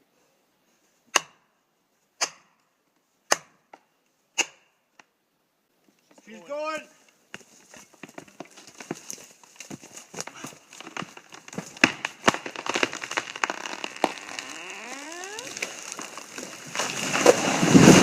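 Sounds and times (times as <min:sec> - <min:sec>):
wood creaking: 0:07.6 - 0:17.4
wood cracking and snapping: 0:08.1 - 0:18.0
tree crashing down: 0:10.1 - 0:18.0.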